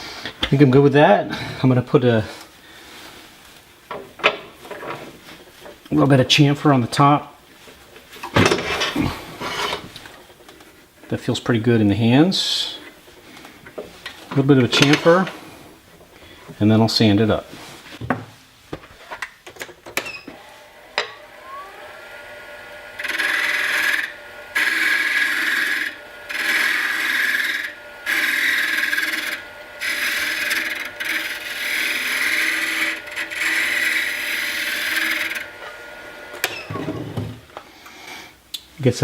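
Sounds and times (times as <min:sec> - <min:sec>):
wood lathe whine: 0:20.3 - 0:37.4
turning tool cutting wood: 0:20.4 - 0:37.3.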